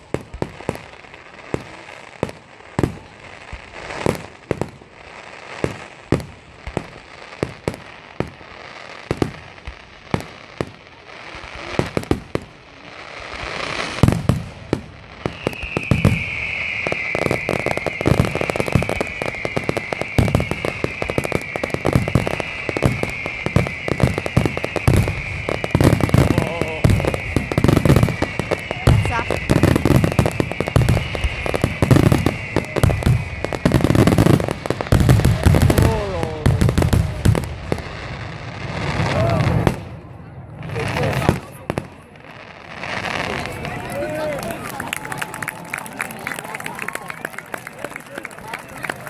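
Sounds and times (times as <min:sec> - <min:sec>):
rapid firework crackle: 0:00.0 - 0:39.9, 0:40.6 - 0:49.0
high wavering whistle: 0:15.3 - 0:34.0.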